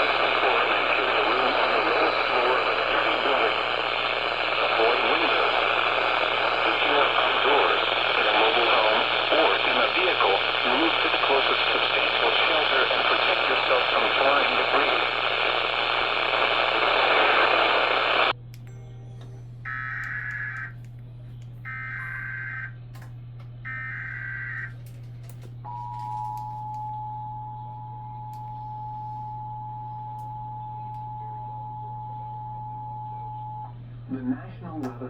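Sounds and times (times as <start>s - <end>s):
low hum: 0.0s - 35.0s
screeching digital data bursts: 21.7s - 22.7s.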